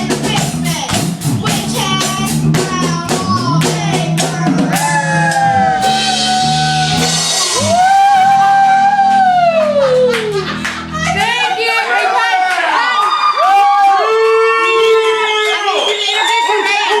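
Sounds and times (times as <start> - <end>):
person singing: 0.0 - 10.6
quick percussion hits: 0.0 - 11.3
rock music: 0.0 - 11.6.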